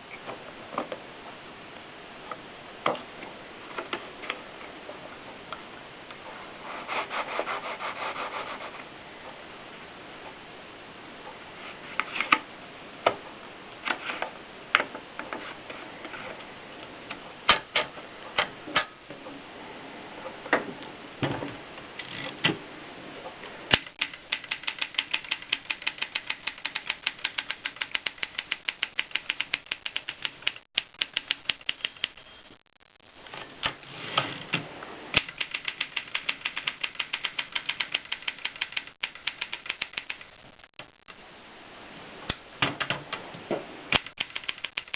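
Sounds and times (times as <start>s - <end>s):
typewriter keystrokes: 23.7s - 32.2s, 35.2s - 40.3s, 44.0s - 44.9s.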